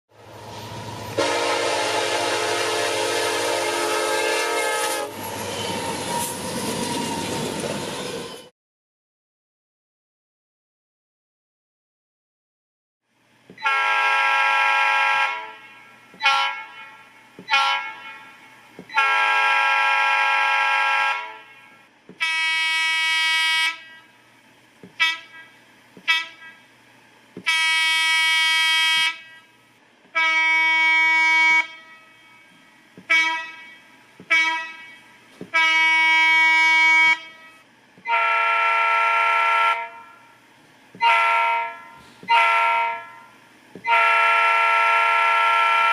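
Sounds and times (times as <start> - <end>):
locomotive air horns: 1.1 - 6.4, 13.6 - 24.2, 24.9 - 26.7, 27.4 - 45.9.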